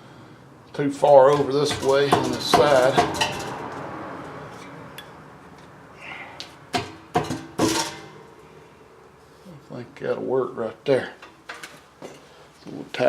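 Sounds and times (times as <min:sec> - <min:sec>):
short metal knocks: 0:01.2 - 0:03.8, 0:06.7 - 0:08.3
ringing metal clank: 0:01.3 - 0:03.6, 0:06.8 - 0:08.8.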